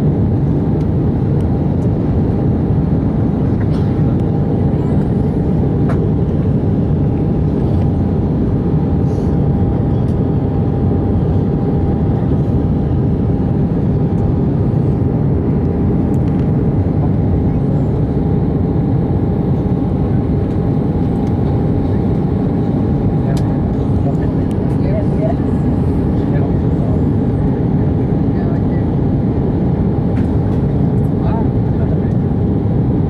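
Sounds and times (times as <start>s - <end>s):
airplane cabin engine and airflow rush: 0.0s - 33.0s.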